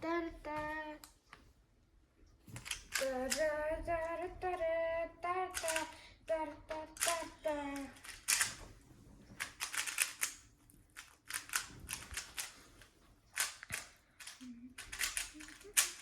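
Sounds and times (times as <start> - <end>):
rubik's cube clicking: 2.6 - 3.5, 5.5 - 6.0, 6.8 - 8.6, 9.4 - 10.4, 11.0 - 16.0
high voice singing: 3.0 - 8.0.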